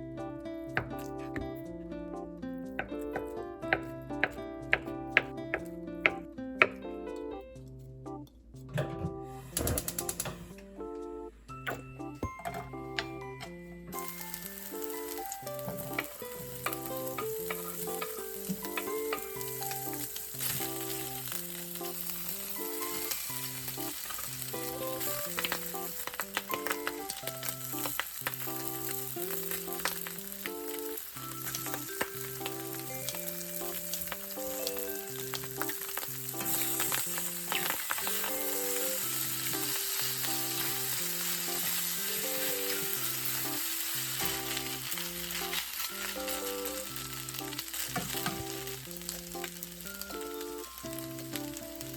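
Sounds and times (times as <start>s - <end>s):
bouncy background music: 0.0s - 51.9s
food sizzling in a pan: 13.9s - 51.9s.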